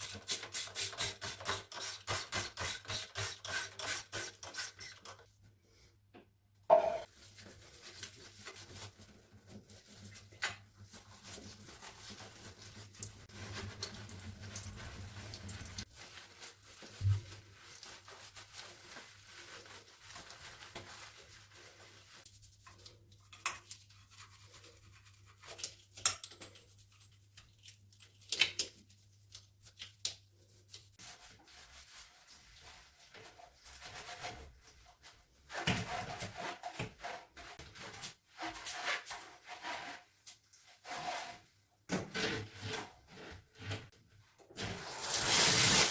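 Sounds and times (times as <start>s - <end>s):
brush scrubbing: 7.0s - 26.0s, 28.8s - 41.6s.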